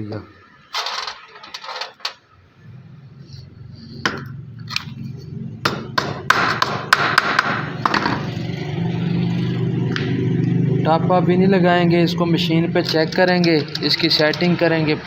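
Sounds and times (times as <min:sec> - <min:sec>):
metal tools clinking on workbench: 0:00.7 - 0:02.2, 0:12.8 - 0:14.6.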